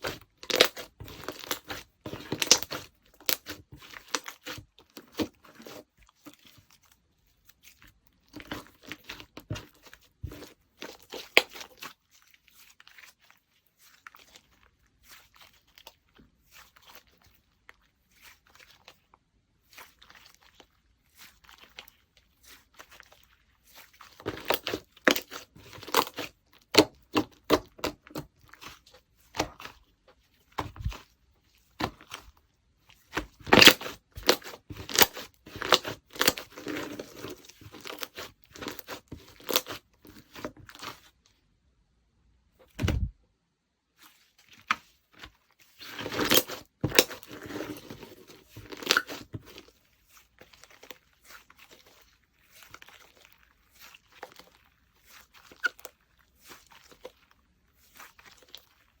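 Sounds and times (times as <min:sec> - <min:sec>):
slime squishing and popping: 0:00.0 - 0:06.6, 0:24.0 - 0:29.9, 0:33.0 - 0:41.1, 0:45.8 - 0:49.7
dull thump: 0:42.7 - 0:43.2.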